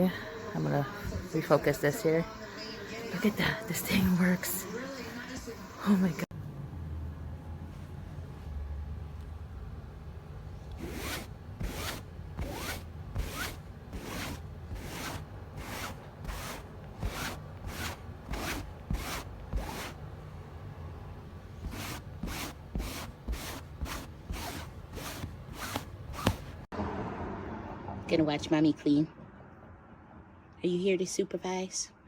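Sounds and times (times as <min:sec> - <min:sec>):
brush rasping on upholstery: 0:10.8 - 0:20.0, 0:21.6 - 0:26.7.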